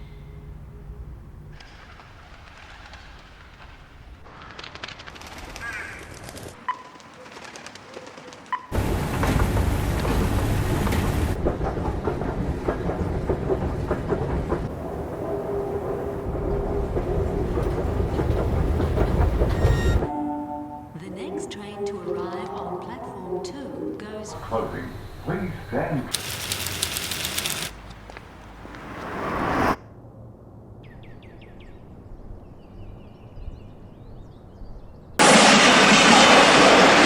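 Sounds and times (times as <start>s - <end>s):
quiet city ambience: 6.1s - 33.0s
passenger train running: 8.7s - 20.1s, 24.3s - 28.5s.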